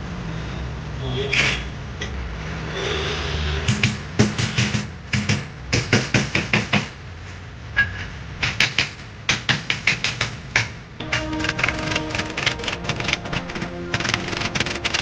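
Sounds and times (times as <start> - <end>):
rapid sharp taps on wood: 3.7 - 7.0, 8.4 - 10.8.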